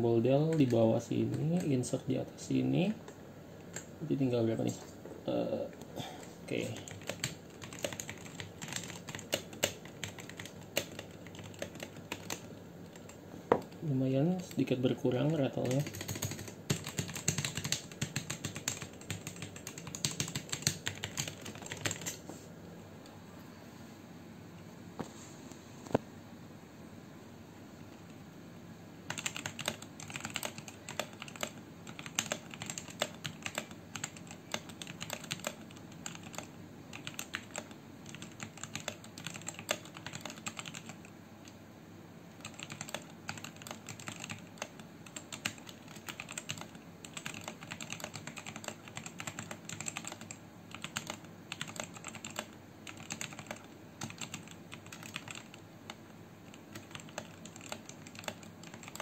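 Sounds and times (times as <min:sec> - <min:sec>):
fast typing on mechanical keyboard: 0:00.4 - 0:01.7, 0:06.5 - 0:13.2, 0:15.2 - 0:22.2, 0:29.1 - 0:41.6, 0:42.4 - 0:59.0.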